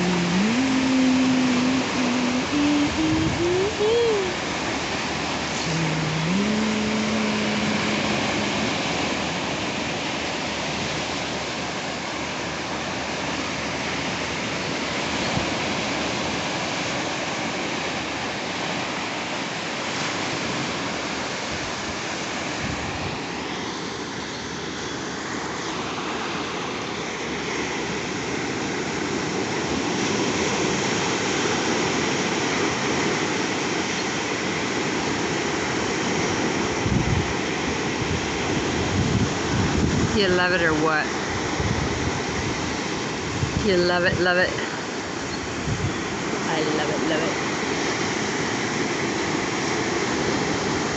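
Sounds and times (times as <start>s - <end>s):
hummed note: 0.0s - 4.5s, 5.5s - 9.5s.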